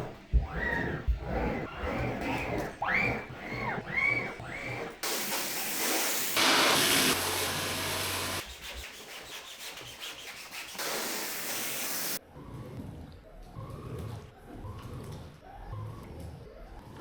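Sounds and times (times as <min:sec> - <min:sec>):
wet rug being scrubbed: 0:00.0 - 0:12.2.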